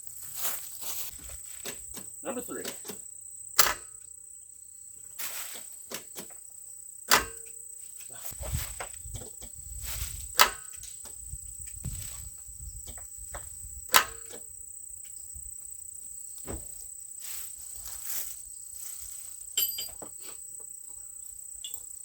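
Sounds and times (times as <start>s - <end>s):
high insect trill: 0.0s - 22.0s
metallic tool clicks and clinks: 19.6s - 20.0s, 21.6s - 21.9s.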